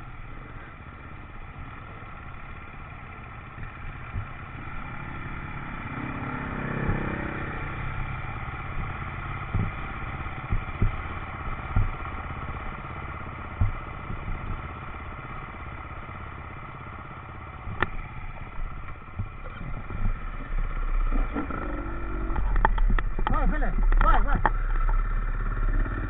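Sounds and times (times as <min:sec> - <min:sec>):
motorcycle engine running: 0:00.0 - 0:26.0
sharp knocks: 0:06.4 - 0:07.8, 0:08.7 - 0:12.9, 0:13.5 - 0:14.8, 0:17.6 - 0:18.0.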